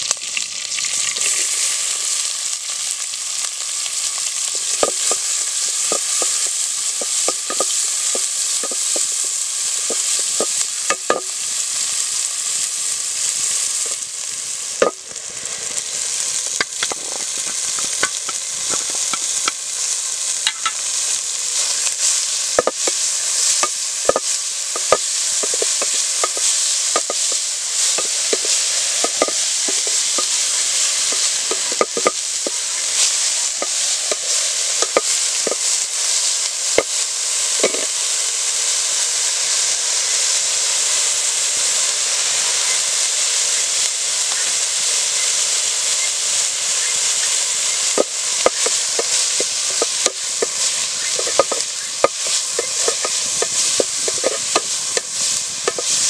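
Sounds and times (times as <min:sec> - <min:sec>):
food sizzling in hot oil: 0:00.0 - 0:56.0
utensil scraping and knocking pan: 0:04.5 - 0:11.4, 0:16.5 - 0:19.6, 0:20.4 - 0:20.8, 0:22.0 - 0:35.7, 0:48.0 - 0:56.0.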